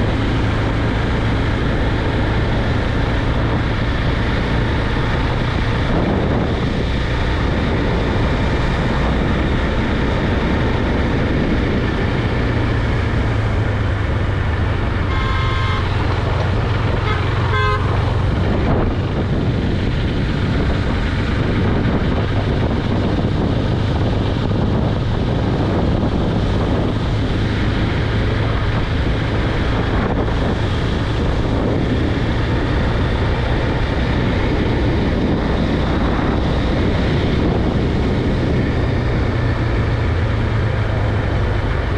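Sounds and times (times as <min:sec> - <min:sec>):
motorcycle engine running: 0:00.0 - 0:41.9
wind on microphone: 0:00.0 - 0:41.9
vehicle horn honking: 0:15.1 - 0:16.3, 0:16.9 - 0:18.2.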